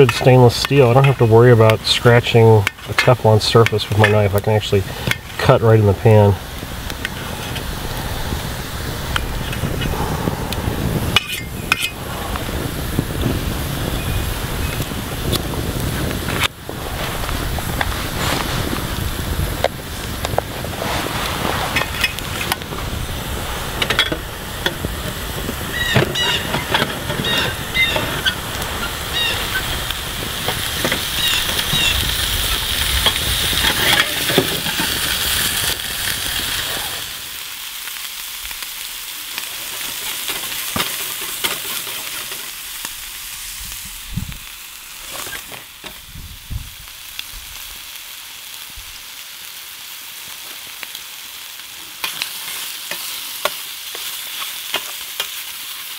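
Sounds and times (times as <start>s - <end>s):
utensil clicking and scraping in pan: 0.0s - 5.6s, 11.1s - 12.0s, 19.6s - 22.8s, 23.8s - 36.2s, 39.2s - 43.0s, 44.9s - 46.0s, 51.8s - 55.7s
food sizzling in a skillet: 0.0s - 55.9s
low rumble: 6.4s - 25.8s.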